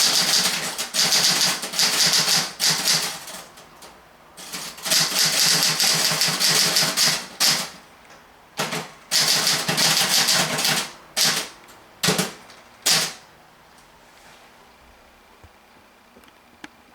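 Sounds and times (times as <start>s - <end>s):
typewriter keystrokes: 0.0s - 7.8s, 8.6s - 13.2s.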